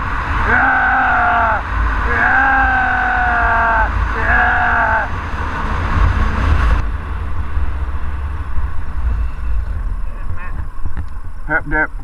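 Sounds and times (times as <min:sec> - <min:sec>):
motorcycle engine drone: 0:00.0 - 0:12.0
wind rush on microphone: 0:00.0 - 0:12.0
man shouting: 0:00.4 - 0:05.1.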